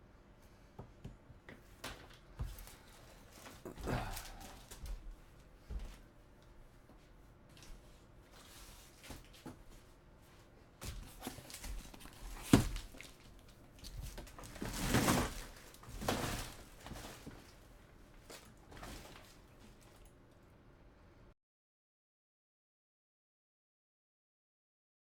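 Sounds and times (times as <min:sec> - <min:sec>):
rustling: 0:10.8 - 0:20.1.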